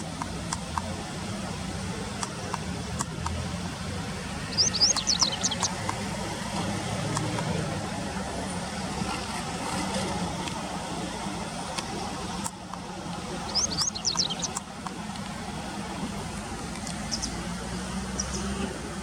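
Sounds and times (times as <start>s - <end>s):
bird chirping: 4.4s - 5.9s, 13.4s - 14.6s, 17.0s - 18.6s.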